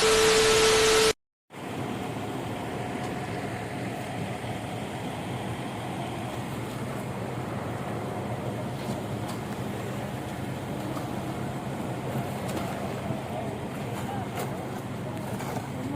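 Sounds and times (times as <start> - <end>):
diesel construction machinery running: 0.0 - 15.9.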